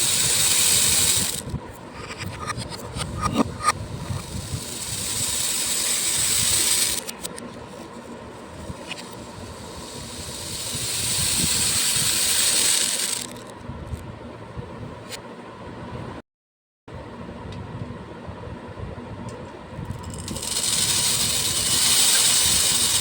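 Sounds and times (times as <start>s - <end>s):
beads pouring: 0.0s - 1.4s, 4.4s - 7.1s, 9.0s - 13.5s, 20.0s - 23.0s.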